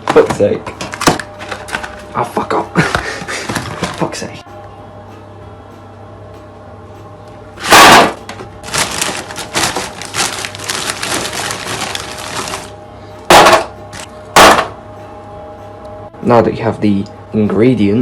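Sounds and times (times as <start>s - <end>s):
plastic packaging crackling: 7.6s - 12.8s.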